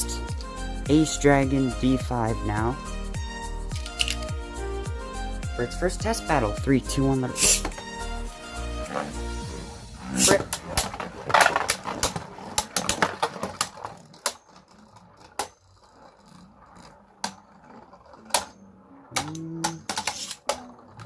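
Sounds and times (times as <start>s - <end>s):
spinning tops clicking collisions: 3.7s - 4.4s.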